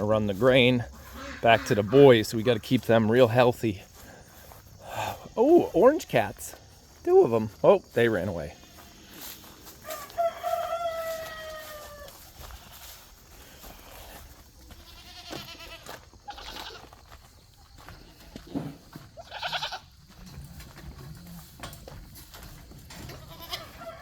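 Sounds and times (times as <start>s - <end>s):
goats bleating: 0.0s - 3.7s, 10.4s - 17.0s, 17.9s - 21.5s, 22.9s - 24.0s.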